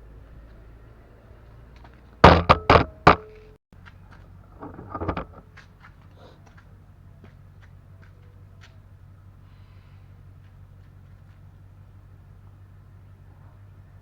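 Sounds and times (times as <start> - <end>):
soft clatter: 1.7 - 8.8
loud knocks: 2.2 - 3.4.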